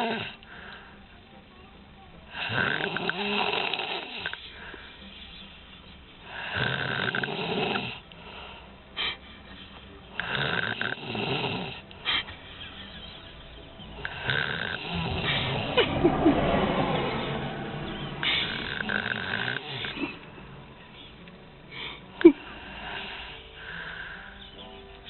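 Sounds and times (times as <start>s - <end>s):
elderly woman snoring: 0.0s - 0.8s, 2.3s - 4.8s, 6.3s - 8.1s, 10.2s - 12.3s, 13.9s - 15.4s, 18.2s - 20.2s.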